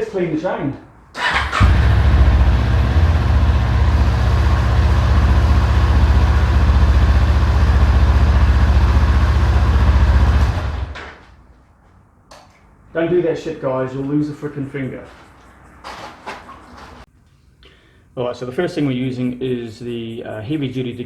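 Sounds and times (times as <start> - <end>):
motorcycle engine idling: 1.2 - 11.0.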